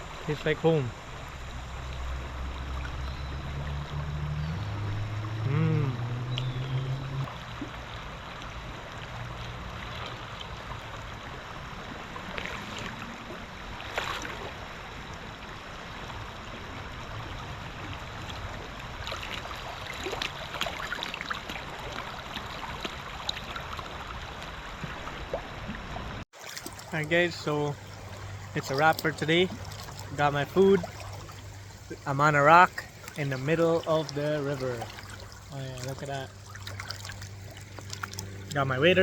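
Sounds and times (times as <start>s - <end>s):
river water rushing: 26.4s - 39.0s.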